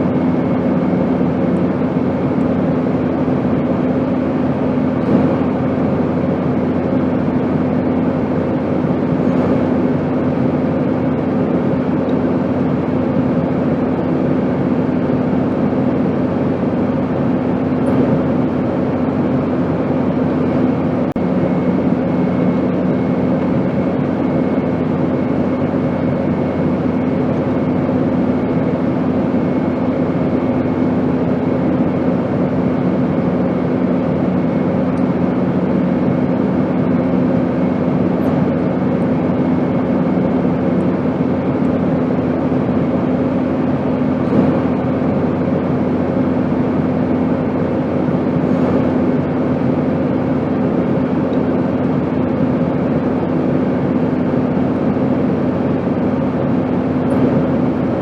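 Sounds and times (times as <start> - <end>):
airplane engine noise: 0.0 - 58.0.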